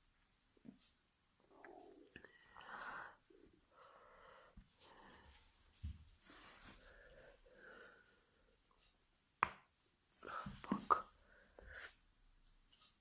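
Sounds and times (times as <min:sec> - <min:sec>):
faint breathing: 0:01.5 - 0:08.6.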